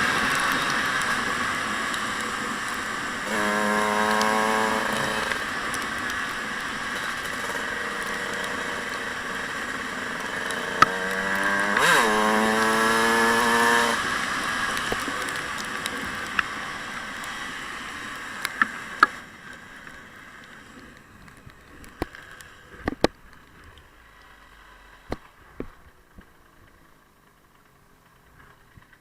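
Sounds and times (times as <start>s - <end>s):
dirt bike engine revving: 3.2s - 5.6s, 6.8s - 14.6s.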